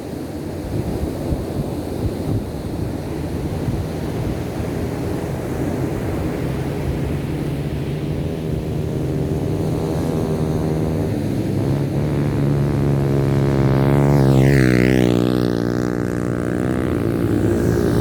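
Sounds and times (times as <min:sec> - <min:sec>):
ocean surf washing: 0:00.0 - 0:18.0
wind buffeting microphone: 0:00.0 - 0:18.0
steady engine hum: 0:00.1 - 0:18.0.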